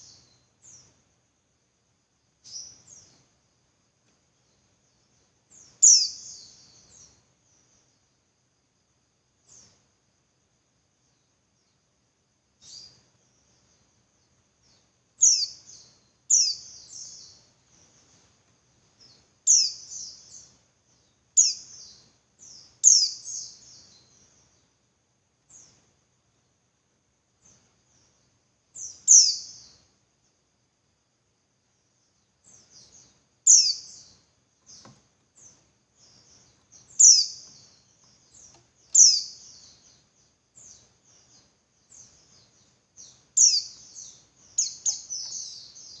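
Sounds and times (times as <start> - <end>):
bird soft twittering: 5.5 - 7.2, 14.6 - 18.2, 19.0 - 24.6, 28.8 - 29.8, 32.5 - 46.0
bird sharp high calls: 33.5 - 34.1, 36.8 - 39.8.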